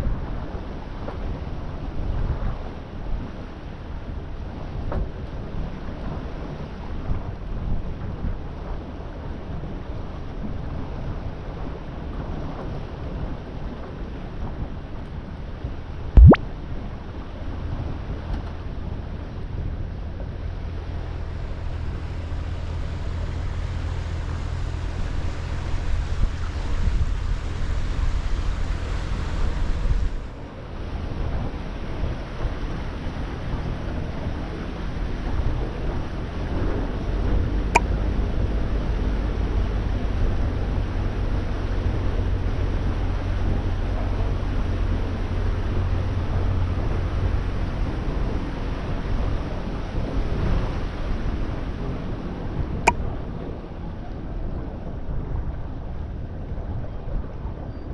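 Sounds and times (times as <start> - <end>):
wind: 0.0 - 16.4, 17.3 - 57.9
water noise: 16.2 - 16.4.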